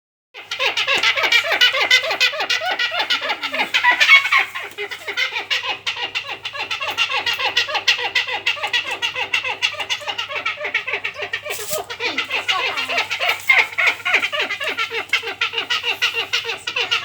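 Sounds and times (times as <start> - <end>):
hornbill calling: 0.4 - 17.0.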